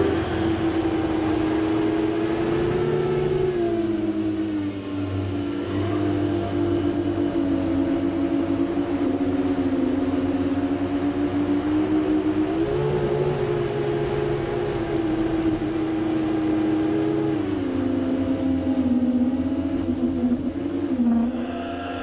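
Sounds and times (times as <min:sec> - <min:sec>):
drone motors whining: 0:00.0 - 0:04.5, 0:17.5 - 0:22.0.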